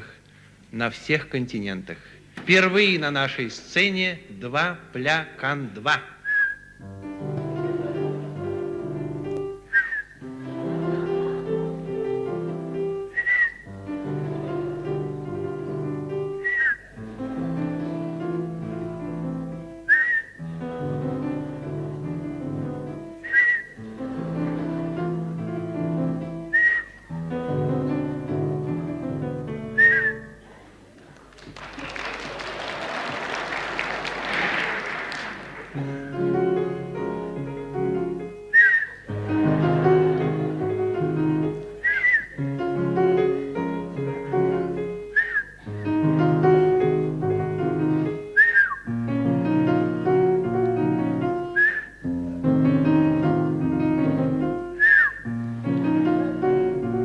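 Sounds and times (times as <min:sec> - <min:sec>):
instrumental accompaniment: 0:06.8 - 0:30.5, 0:35.6 - 0:57.0
piano chords: 0:06.8 - 0:30.5, 0:34.6 - 0:57.0
audience applause: 0:07.1 - 0:09.6, 0:10.2 - 0:16.0, 0:23.9 - 0:26.3, 0:30.4 - 0:37.5, 0:39.0 - 0:42.4
short whistled note: 0:09.7 - 0:10.2, 0:13.1 - 0:13.7, 0:16.4 - 0:16.9, 0:19.9 - 0:20.4, 0:23.2 - 0:23.8, 0:26.5 - 0:27.1, 0:29.8 - 0:30.4, 0:38.5 - 0:39.0, 0:41.8 - 0:42.4, 0:45.1 - 0:45.6, 0:48.4 - 0:48.9, 0:51.4 - 0:52.0, 0:54.8 - 0:55.3.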